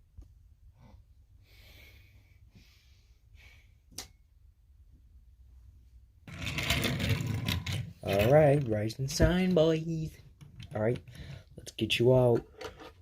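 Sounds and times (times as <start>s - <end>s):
rustling and clattering handling noise: 6.3s - 13.0s.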